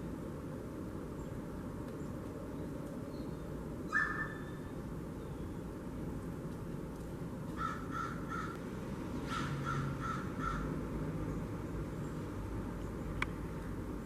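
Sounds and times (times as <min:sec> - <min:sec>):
blue jay calling: 0:03.1 - 0:05.6, 0:07.5 - 0:08.6, 0:09.2 - 0:10.8.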